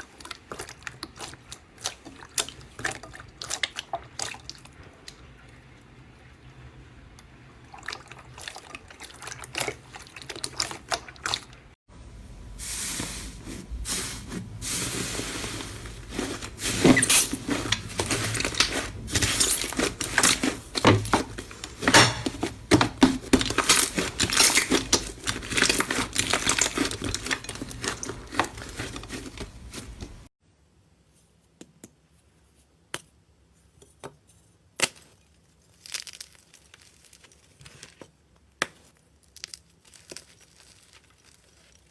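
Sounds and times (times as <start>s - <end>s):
slime crackling and popping: 16.0s - 22.0s, 22.6s - 30.2s, 34.8s - 41.9s.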